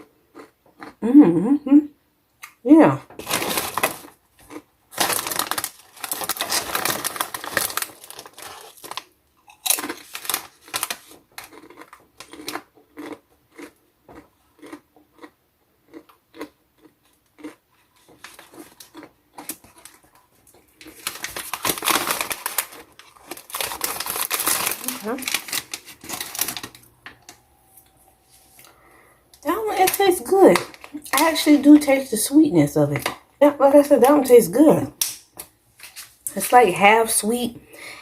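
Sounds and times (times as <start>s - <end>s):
chip crunching while chewed: 0.0s - 1.0s, 3.2s - 26.9s
bag crinkling: 3.2s - 13.1s, 18.1s - 27.4s, 29.4s - 31.8s.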